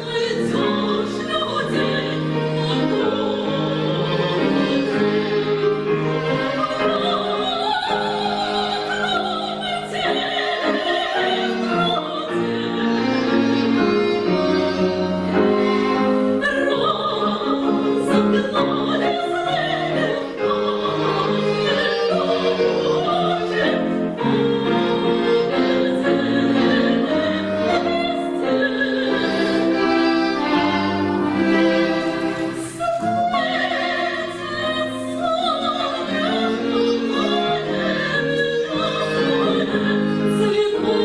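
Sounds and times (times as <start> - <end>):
woman singing operatically: 0.0 - 14.4, 16.0 - 41.0
orchestra with bowed strings: 29.0 - 41.0.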